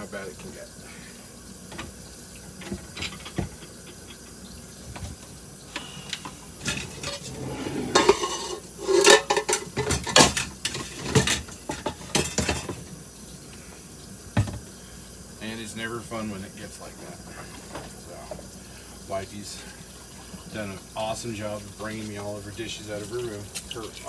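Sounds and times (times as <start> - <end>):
dishes and cutlery clinking: 6.2 - 12.9.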